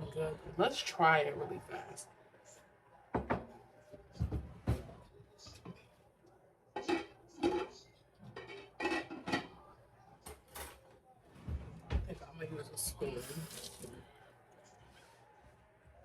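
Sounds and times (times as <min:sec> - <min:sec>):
cutlery clinking against a dish: 0:06.8 - 0:09.6.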